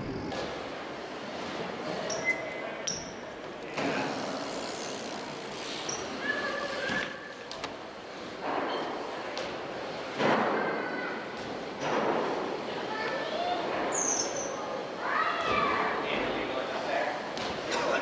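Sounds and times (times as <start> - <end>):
short high squeaks: 2.1 - 3.2, 13.9 - 14.6.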